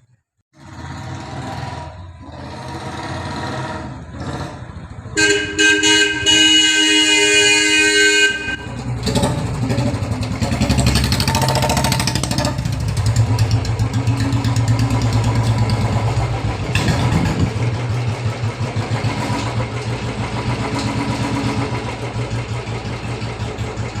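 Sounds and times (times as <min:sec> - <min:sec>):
motorcycle engine revving: 0:00.6 - 0:24.0
vehicle horn: 0:05.1 - 0:08.9.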